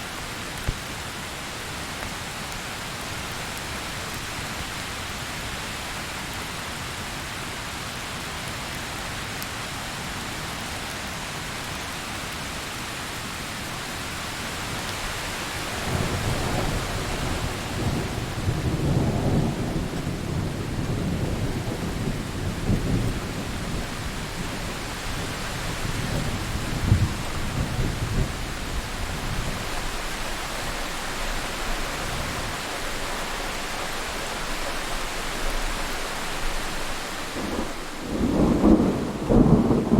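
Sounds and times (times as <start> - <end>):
heavy rain: 0.0 - 39.9
rolling thunder: 15.8 - 30.2, 37.3 - 39.9
thunder crack: 37.3 - 39.9.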